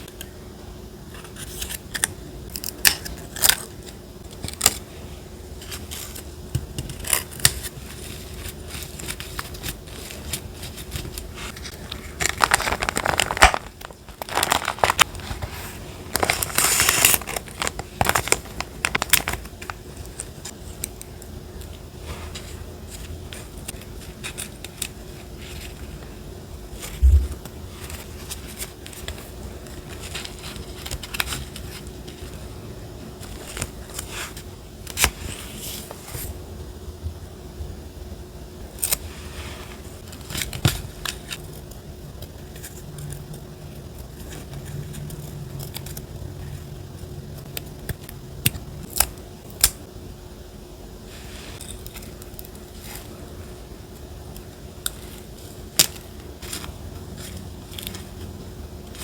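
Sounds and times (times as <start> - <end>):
hands handling paper and tools: 5.6 - 32.5.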